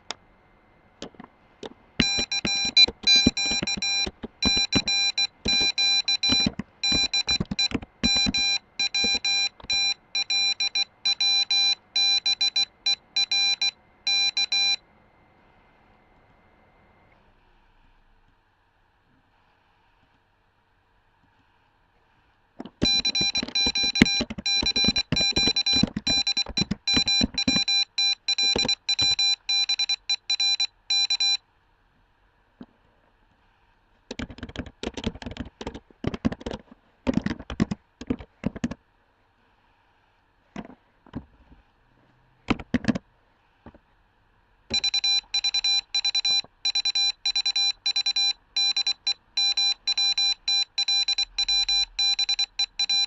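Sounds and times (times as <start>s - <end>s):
irregular clicks and taps: 1.0s - 9.8s, 22.6s - 29.3s, 34.1s - 38.8s, 40.6s - 41.3s, 42.5s - 43.0s, 44.7s - 48.1s
morse code beeps: 2.0s - 14.8s, 22.8s - 31.4s, 44.7s - 53.0s.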